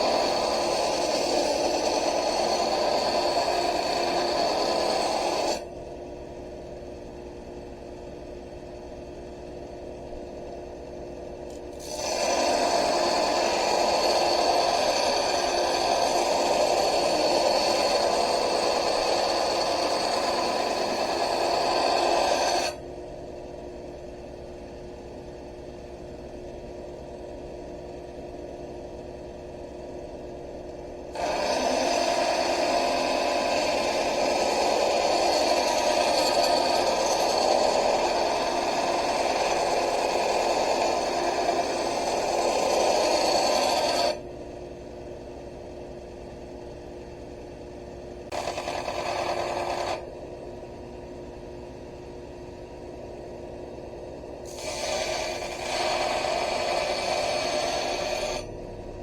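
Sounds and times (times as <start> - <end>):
grinder scraping steel: 0.0 - 5.6, 11.5 - 22.8, 31.1 - 44.2, 48.3 - 50.1, 54.4 - 58.6
grinder motor humming: 0.0 - 5.7, 11.5 - 22.8, 30.6 - 44.3, 48.2 - 50.3, 54.2 - 59.0.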